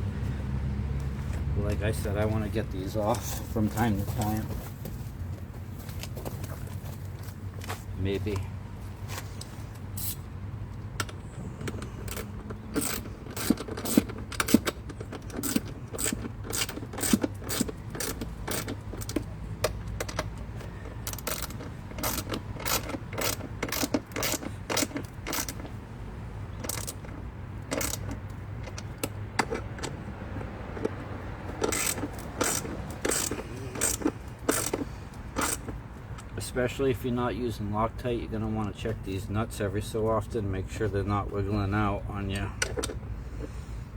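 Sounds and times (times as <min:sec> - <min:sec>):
ratchet wrench clicking: 0:11.0 - 0:25.8, 0:26.6 - 0:36.3.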